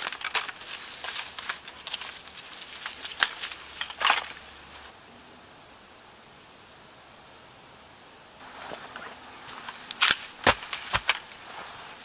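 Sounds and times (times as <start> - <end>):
sticks and brush crackling: 0.0 - 5.0, 8.4 - 12.0.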